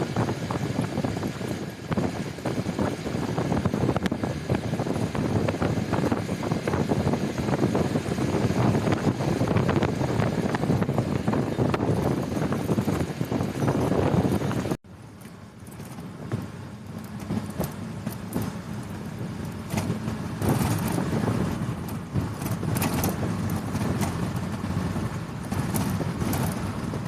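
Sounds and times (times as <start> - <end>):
train carriage rumbling: 0.0 - 27.0
rattles and knocks: 11.2 - 27.0.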